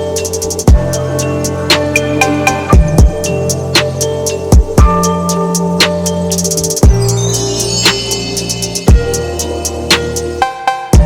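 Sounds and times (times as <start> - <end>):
hip hop instrumental beat: 0.0 - 11.0
deep kick drum thumps: 2.7 - 3.3.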